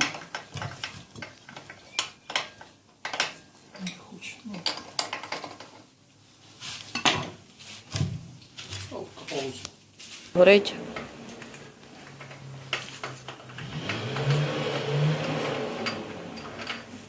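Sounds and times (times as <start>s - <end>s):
metal tools and parts clinking: 15.4s - 17.0s.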